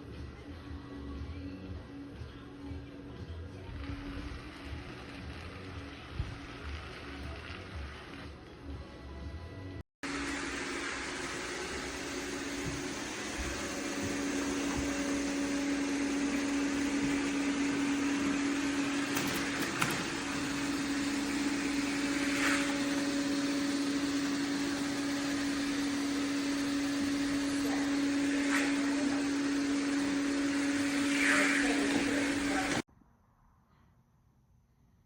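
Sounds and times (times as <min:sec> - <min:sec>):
robot vacuum motor hum: 0:03.7 - 0:08.4, 0:10.1 - 0:32.9.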